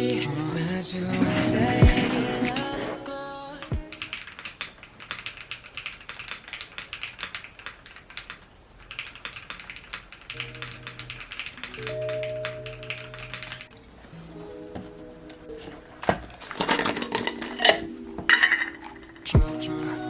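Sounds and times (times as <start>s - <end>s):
typing on mechanical keyboard: 3.8s - 13.8s.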